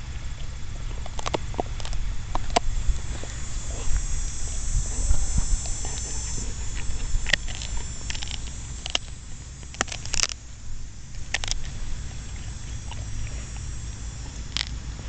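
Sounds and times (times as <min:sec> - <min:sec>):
dog gnawing wooden stick: 0:00.0 - 0:15.0.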